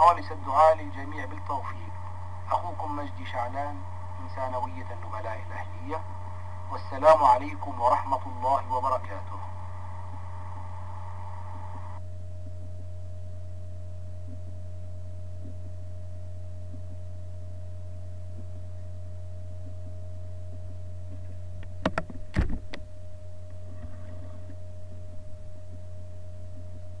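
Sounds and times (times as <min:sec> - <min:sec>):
faint high steady tone: 0:00.0 - 0:21.8, 0:22.7 - 0:27.0
low electrical hum: 0:00.0 - 0:27.0
sharp knocks: 0:21.8 - 0:22.7.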